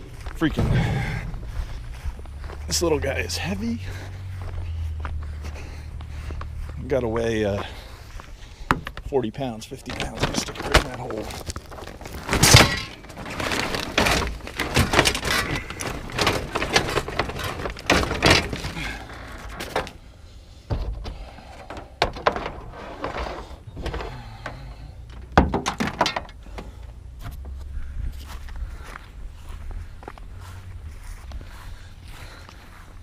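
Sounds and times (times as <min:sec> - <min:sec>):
heavy scrap thunk: 0:00.4 - 0:03.6, 0:11.9 - 0:20.0
scrap metal knocks and clatter: 0:09.9 - 0:20.0, 0:20.7 - 0:26.8.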